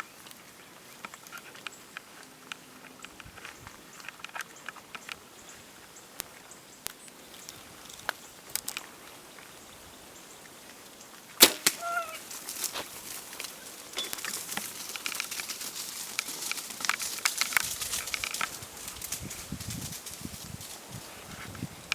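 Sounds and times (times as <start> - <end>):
bow string snap: 11.4 - 12.2
animals running through dry brush: 11.4 - 21.9
hog squealing: 11.8 - 12.3.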